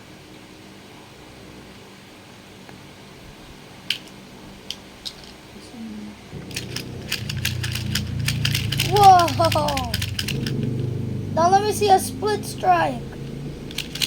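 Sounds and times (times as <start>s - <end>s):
plastic toy parts clicking: 3.9s - 5.4s, 6.5s - 10.6s, 13.7s - 14.0s
low hum: 5.6s - 14.0s.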